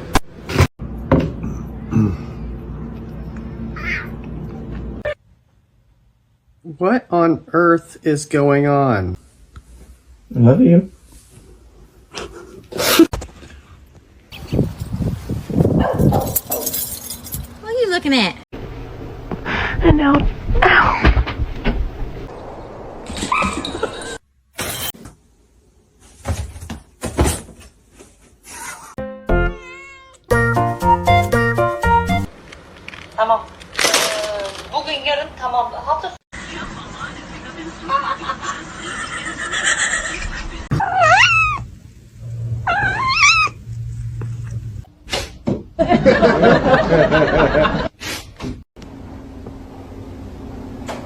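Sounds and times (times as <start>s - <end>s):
cats meowing: 29.6s - 30.3s, 40.7s - 41.7s, 42.6s - 43.6s
music with stepped notes: 30.3s - 32.3s.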